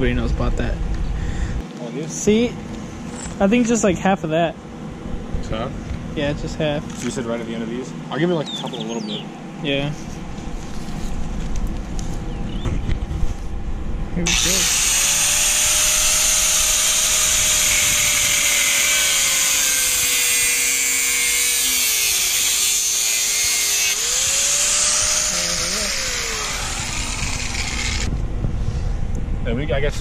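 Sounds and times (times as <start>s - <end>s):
angle grinder cutting metal: 14.3s - 28.1s.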